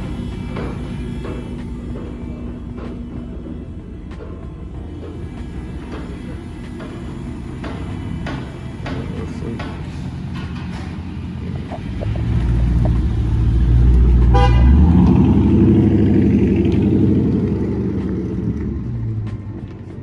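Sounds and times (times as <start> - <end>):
car driving past: 10.0 - 20.0
car horn toot: 14.2 - 15.0.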